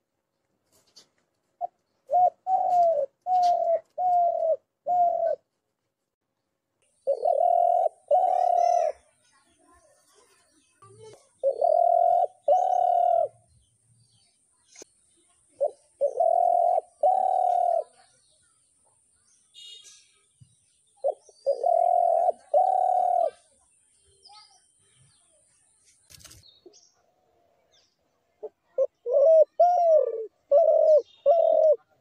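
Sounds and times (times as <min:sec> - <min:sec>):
small birds chirping: 0:00.2 - 0:05.6, 0:06.2 - 0:32.0
dove cooing: 0:01.6 - 0:05.4, 0:07.0 - 0:09.0, 0:11.4 - 0:13.4, 0:15.6 - 0:18.0, 0:21.0 - 0:23.5, 0:28.4 - 0:31.9.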